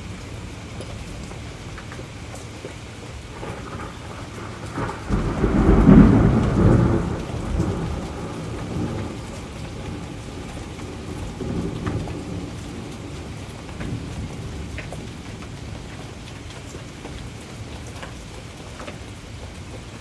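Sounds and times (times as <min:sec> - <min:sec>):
steady rain: 0:00.0 - 0:20.0
thunder rumbling: 0:03.1 - 0:17.4.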